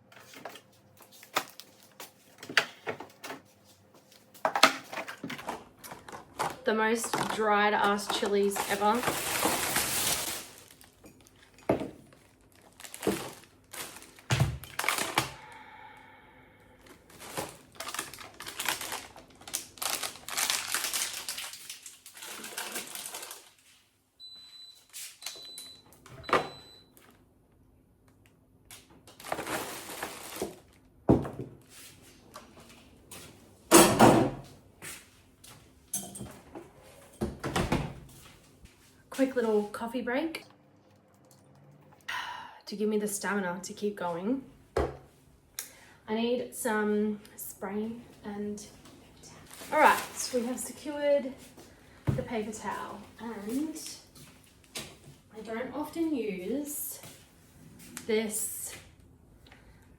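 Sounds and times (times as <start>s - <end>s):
food containers knocking and clattering: 4.4s - 9.7s
packets rustling: 5.4s - 11.0s, 12.1s - 15.4s, 16.8s - 23.6s.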